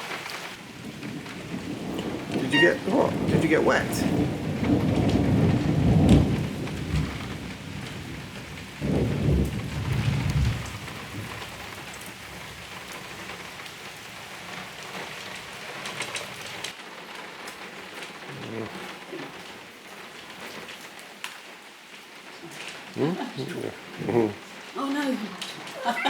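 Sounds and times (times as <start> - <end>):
steady rain: 0.0 - 26.0
thunder rumbling: 0.6 - 16.7.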